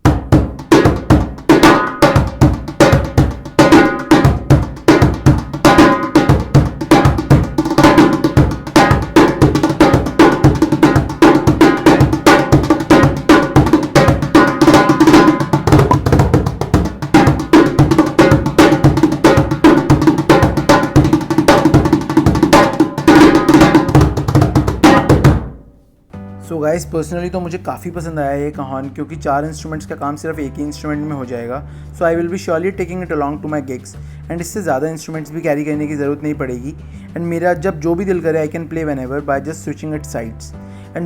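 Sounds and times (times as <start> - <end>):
hand drum groove: 0.0 - 25.7.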